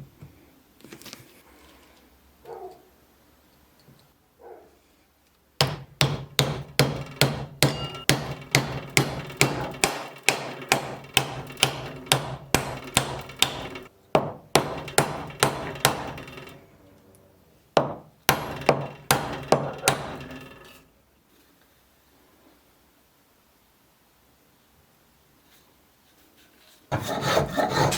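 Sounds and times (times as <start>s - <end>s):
hammer striking with ringing blows: 5.6s - 16.6s, 17.8s - 20.8s.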